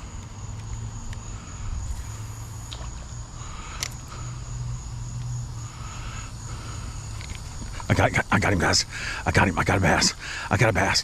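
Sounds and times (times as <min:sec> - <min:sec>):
insects chirring: 0:00.0 - 0:11.0.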